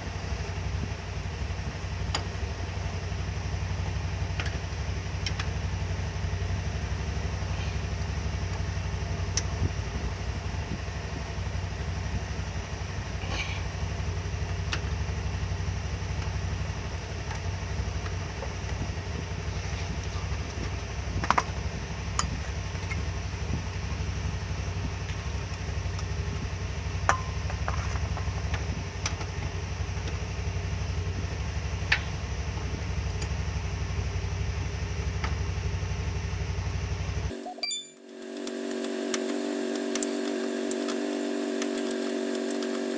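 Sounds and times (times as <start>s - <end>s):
engine idling: 37.3s - 42.9s
sharp clicks and clinks: 37.3s - 42.9s.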